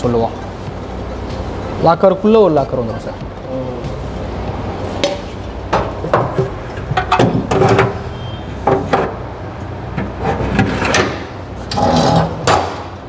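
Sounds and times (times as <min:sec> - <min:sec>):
steady low hum: 0:00.0 - 0:13.0
steel locker clunking: 0:05.0 - 0:09.2, 0:09.9 - 0:13.0.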